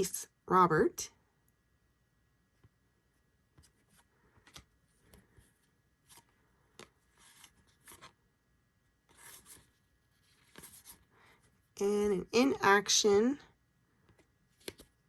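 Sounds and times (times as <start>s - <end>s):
cards rustling: 3.6s - 8.2s, 9.0s - 11.4s, 14.0s - 15.0s.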